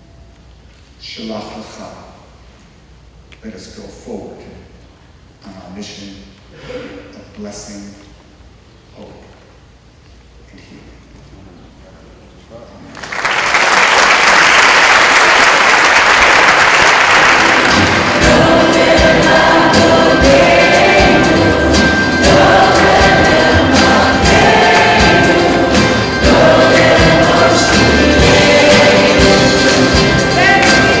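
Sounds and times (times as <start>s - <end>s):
audience applauding: 12.9s - 20.6s
choir singing: 17.1s - 31.0s
upbeat band with drum beat: 17.4s - 31.0s.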